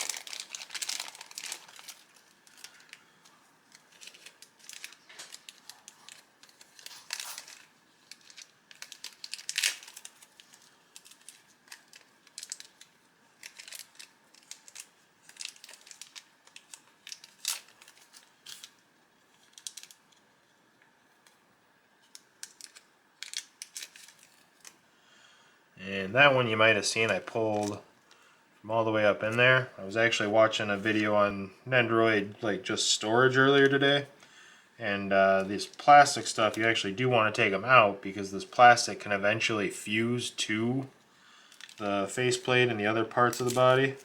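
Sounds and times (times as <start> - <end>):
plastic packaging crinkling: 0.0 - 20.3, 22.0 - 24.8, 26.3 - 28.2, 41.4 - 44.0.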